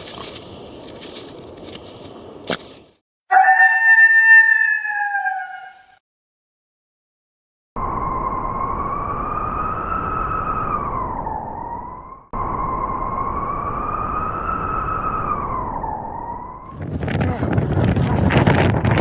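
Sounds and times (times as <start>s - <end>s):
wolf howling: 3.3s - 5.9s.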